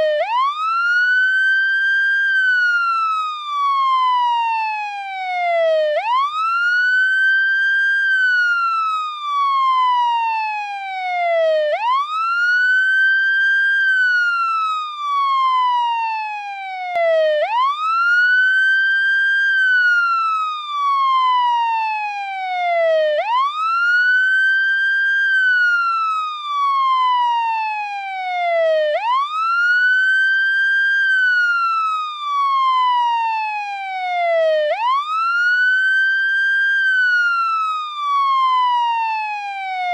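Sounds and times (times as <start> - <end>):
police siren wailing: 0.0 - 39.9.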